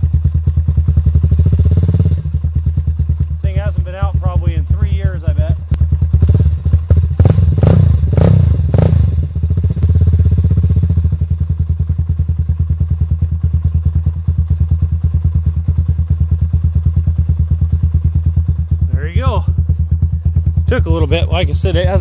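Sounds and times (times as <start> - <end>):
motorcycle engine revving and idling: 0.0 - 22.0.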